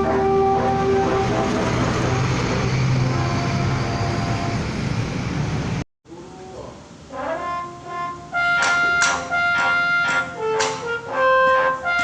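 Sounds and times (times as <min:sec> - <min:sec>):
bus horn melody note: 0:00.0 - 0:04.6, 0:07.1 - 0:12.0
bus engine running loudly: 0:00.0 - 0:05.8
faint horn notes: 0:06.3 - 0:12.0.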